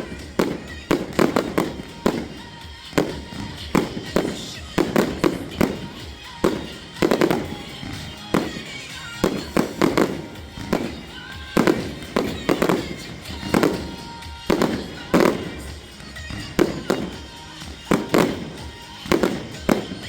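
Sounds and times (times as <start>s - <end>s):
fireworks bangs: 0.0s - 20.0s.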